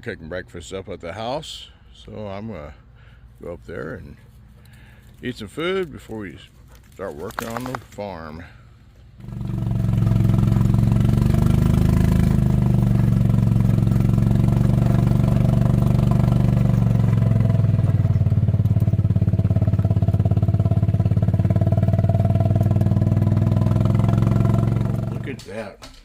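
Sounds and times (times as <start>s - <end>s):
small vehicle engine running: 9.1s - 25.4s.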